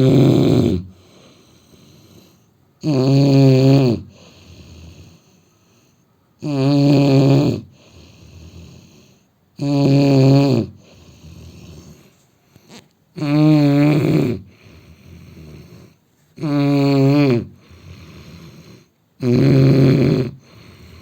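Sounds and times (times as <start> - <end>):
man snoring: 0.0 - 5.3, 6.4 - 12.0, 13.2 - 21.0
quiet breathing: 0.8 - 2.8, 4.0 - 6.4, 7.6 - 9.6, 10.7 - 13.2, 14.3 - 16.5, 17.4 - 19.2, 20.3 - 21.0.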